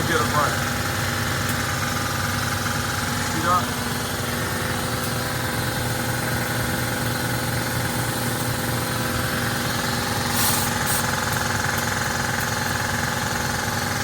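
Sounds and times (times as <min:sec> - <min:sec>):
engine idling: 0:00.0 - 0:14.0
hissing air burst: 0:09.8 - 0:11.4.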